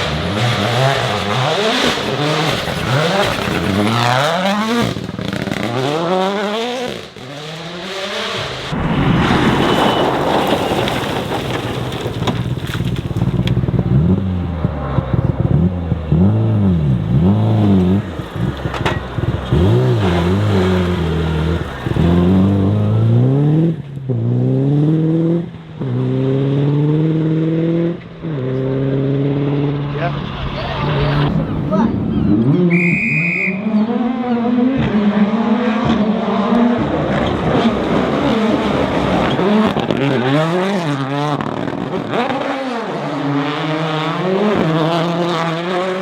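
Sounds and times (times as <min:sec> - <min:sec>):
rally car engine revving: 0:00.0 - 0:46.0
rough noise: 0:07.1 - 0:13.8, 0:28.2 - 0:32.8.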